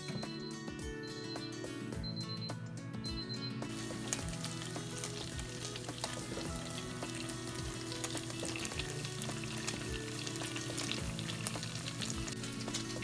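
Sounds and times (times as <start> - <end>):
background music: 0.0 - 13.0
dumplings sizzling in a pan: 3.7 - 13.0.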